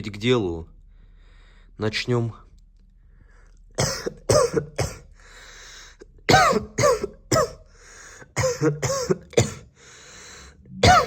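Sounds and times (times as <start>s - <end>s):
noisy breath drawn in: 0.8s - 1.8s, 5.1s - 6.0s, 7.7s - 8.4s, 9.7s - 10.7s
person coughing: 3.8s - 5.1s, 6.2s - 7.7s, 8.3s - 9.8s, 10.8s - 11.0s.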